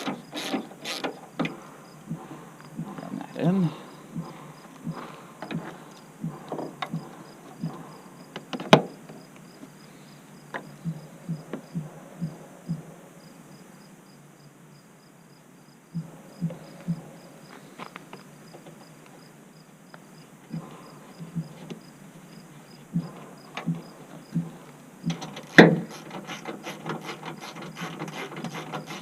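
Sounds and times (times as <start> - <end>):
crickets chirping: 0.0 - 29.0
ratchet clicking: 25.1 - 29.0.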